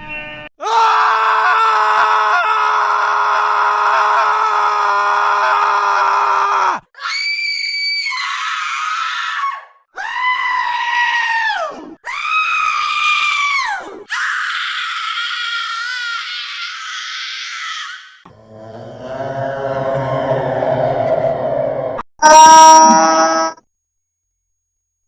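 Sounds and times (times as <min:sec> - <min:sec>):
high-pitched screams: 0:00.6 - 0:18.5, 0:22.2 - 0:23.6.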